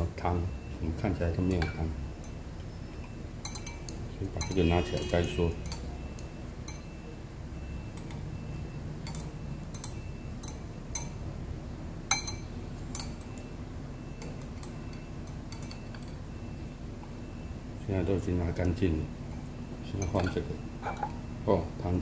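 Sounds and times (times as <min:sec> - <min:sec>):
utensil clinking against bowl: 0:01.5 - 0:02.4, 0:03.0 - 0:06.9, 0:09.0 - 0:11.3, 0:12.1 - 0:13.5, 0:14.2 - 0:16.2, 0:18.6 - 0:21.2.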